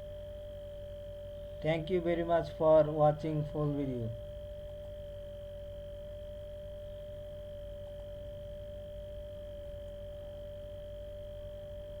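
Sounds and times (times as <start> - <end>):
electrical whine: 0.0 - 12.0
low hum: 1.2 - 5.8.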